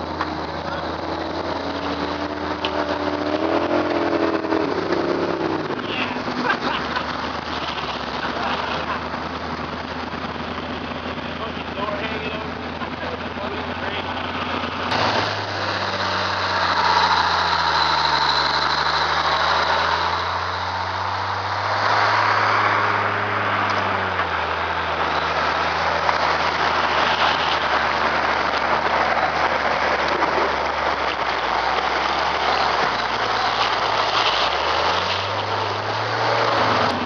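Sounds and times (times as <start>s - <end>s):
quad bike engine revving: 0.0s - 37.0s
steady rushing noise: 0.0s - 37.0s.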